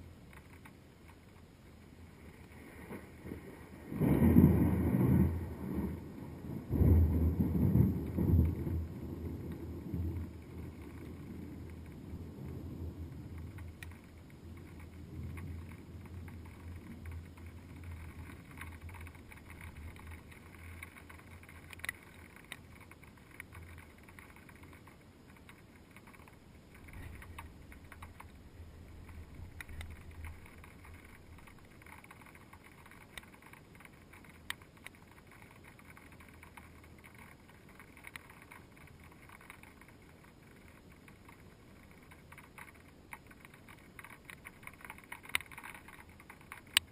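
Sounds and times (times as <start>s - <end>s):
faint ticks: 0.0s - 46.9s
muffled storm rumble: 1.9s - 24.2s, 25.9s - 33.0s.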